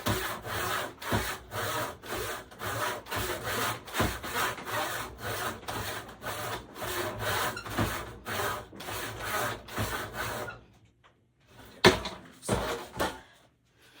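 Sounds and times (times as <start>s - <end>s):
sharp wooden knocks: 0.0s - 1.4s, 3.1s - 4.8s
handsaw cutting wood: 0.0s - 10.6s, 11.9s - 13.2s.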